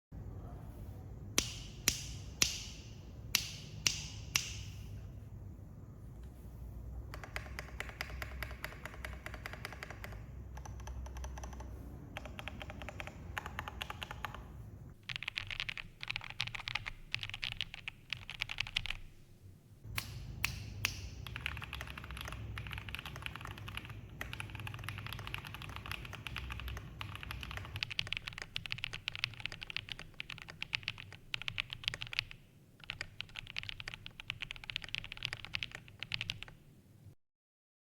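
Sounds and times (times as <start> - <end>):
typing on mechanical keyboard: 7.1 - 19.0, 20.9 - 36.6.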